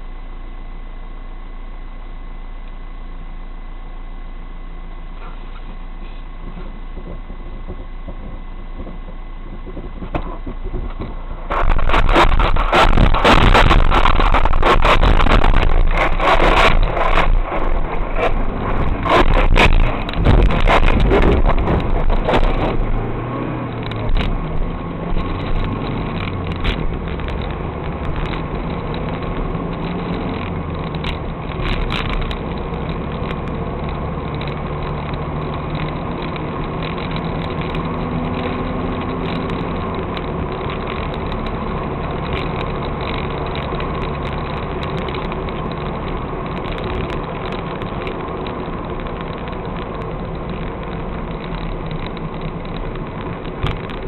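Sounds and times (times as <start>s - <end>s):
car engine idling: 0.0s - 34.8s
distant artillery explosions: 11.5s - 23.2s.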